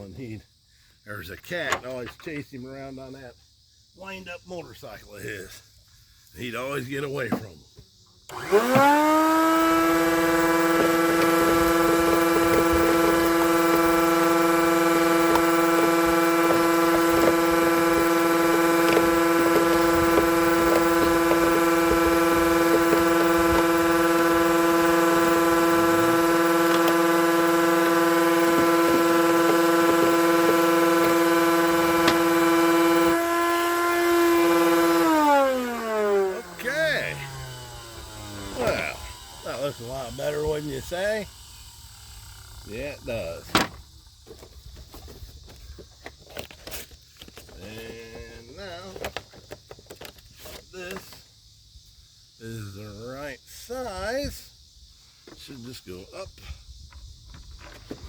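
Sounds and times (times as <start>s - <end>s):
shop vacuum motor whine: 8.3s - 45.6s.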